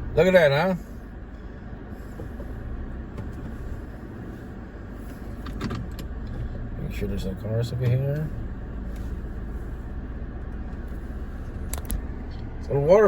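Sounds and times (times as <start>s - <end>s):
car road and engine rumble: 0.0s - 13.0s.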